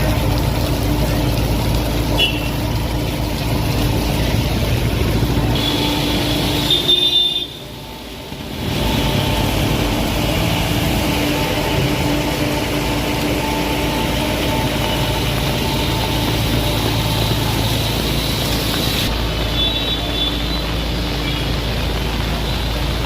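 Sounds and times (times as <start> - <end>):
traffic engines rumbling: 0.0 - 23.0.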